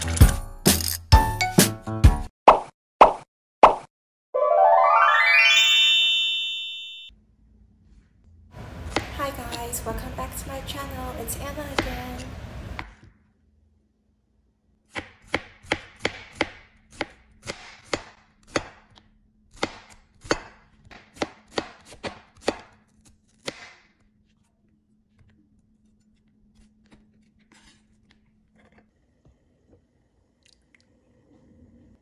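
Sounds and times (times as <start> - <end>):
knife chopping on cutting board: 14.9 - 23.8.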